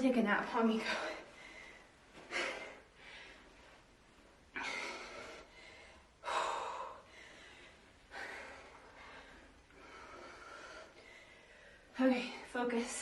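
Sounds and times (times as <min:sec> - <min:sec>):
woman breathing heavily: 0:00.5 - 0:13.0.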